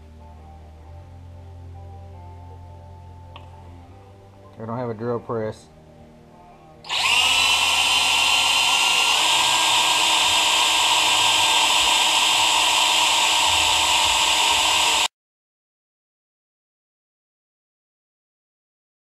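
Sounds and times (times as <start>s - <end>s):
electric drill whining: 6.8s - 15.1s.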